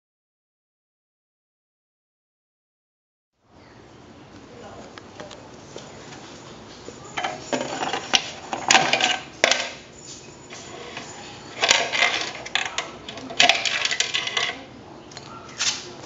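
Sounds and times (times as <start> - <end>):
toy tracked vehicle clattering: 7.1 - 9.8, 10.5 - 15.3.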